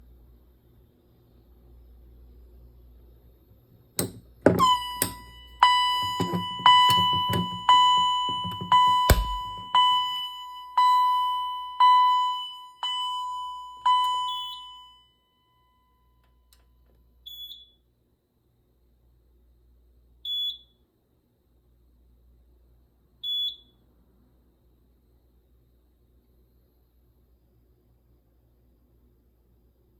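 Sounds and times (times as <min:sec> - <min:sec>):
fire alarm bell ringing: 0:04.5 - 0:16.2
short high beep from panel: 0:04.6 - 0:13.1.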